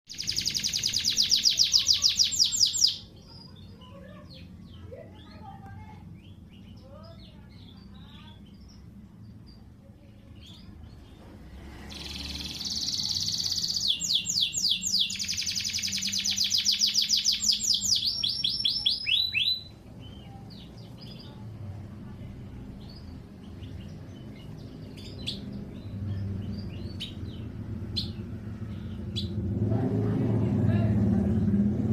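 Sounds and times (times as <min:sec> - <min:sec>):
soft bird chirps: 0:00.1 - 0:22.2
canary singing: 0:00.1 - 0:29.6.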